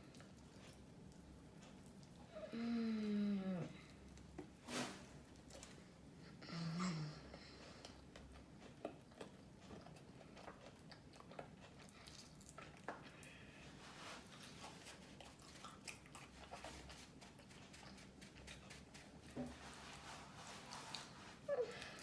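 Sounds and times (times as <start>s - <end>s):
chewing and biting food: 7.7s - 19.0s.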